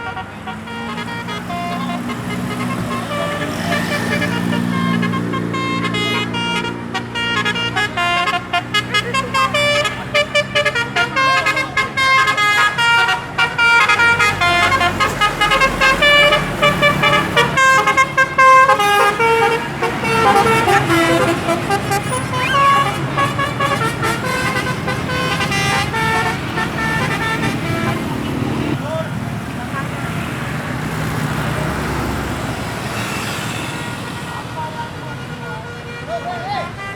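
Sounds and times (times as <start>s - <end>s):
multi-trumpet air horn tune: 0.0s - 28.8s
bus engine running: 0.0s - 35.2s.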